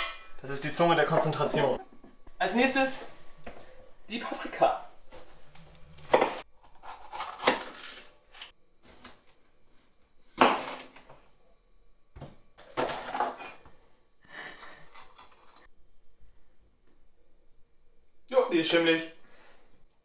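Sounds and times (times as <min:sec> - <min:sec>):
dishes and utensils clattering: 0:00.0 - 0:00.4.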